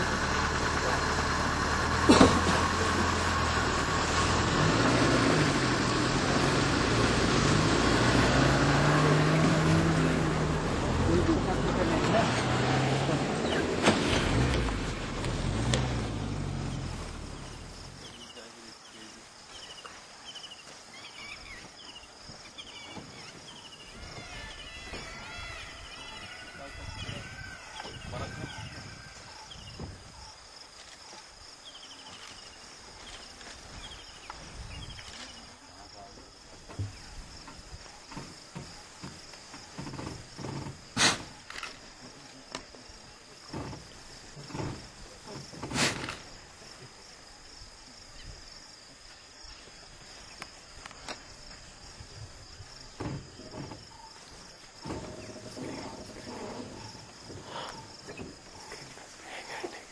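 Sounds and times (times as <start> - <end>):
vehicle engine rumble: 0.0 - 59.9
insect chirping: 14.4 - 59.9.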